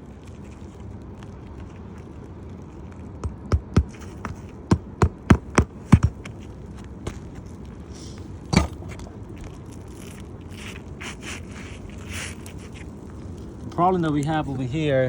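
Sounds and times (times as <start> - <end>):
hammer striking roof shingles: 3.2 - 6.4.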